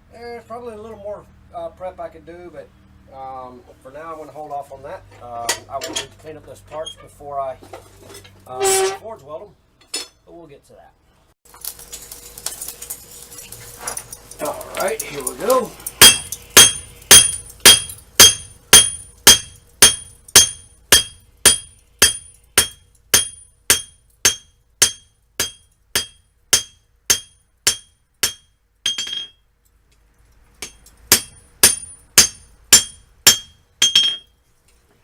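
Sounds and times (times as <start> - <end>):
anvil ringing: 16.0 - 29.4, 30.6 - 34.3
hammer striking steel on anvil: 16.0 - 29.4, 30.6 - 34.3.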